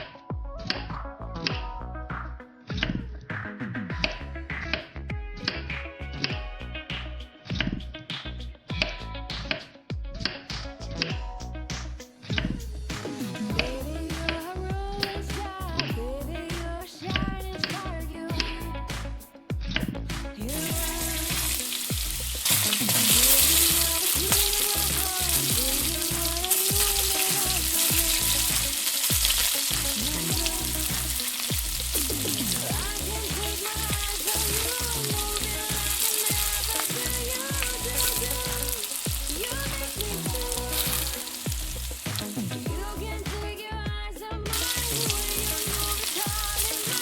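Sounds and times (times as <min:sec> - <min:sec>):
background music: 0:00.0 - 0:47.0
food sizzling in hot oil: 0:20.5 - 0:43.0, 0:44.5 - 0:47.0.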